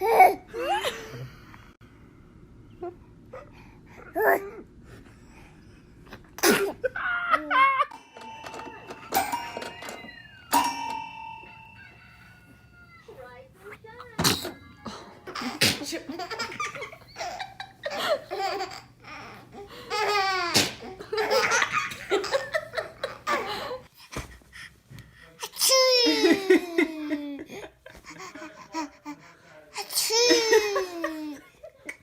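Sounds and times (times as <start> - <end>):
baby laughing: 14.2 - 23.9, 29.8 - 32.0
people laughing: 14.8 - 18.8, 19.7 - 23.9, 26.0 - 29.2, 30.1 - 32.0.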